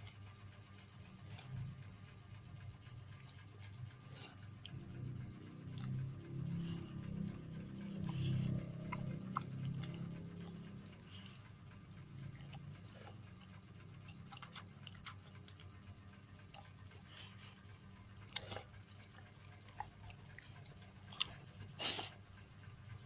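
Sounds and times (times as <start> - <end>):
dog chewing food: 0.0 - 22.7
low steady hum: 0.0 - 23.0.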